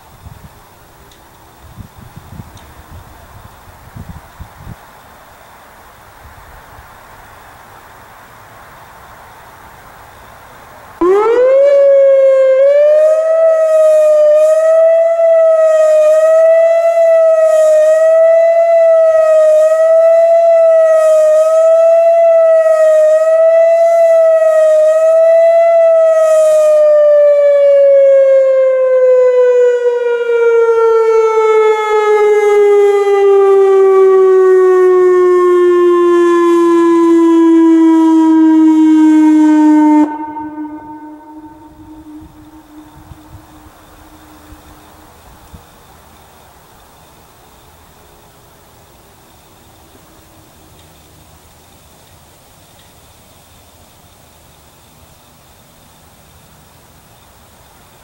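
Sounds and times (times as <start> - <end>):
electronic warning siren: 11.0 - 44.9.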